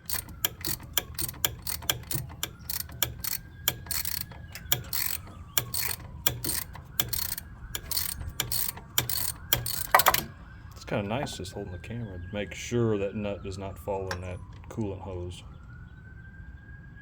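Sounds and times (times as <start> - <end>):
ratcheting wrench clicking: 0.0 - 10.3.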